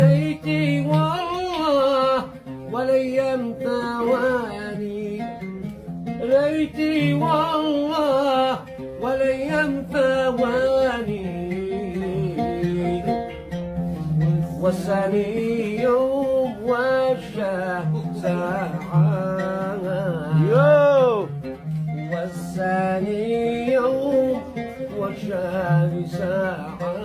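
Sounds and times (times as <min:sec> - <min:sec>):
plucked strings: 0:00.0 - 0:27.0
person singing ornamented melody: 0:17.8 - 0:21.3.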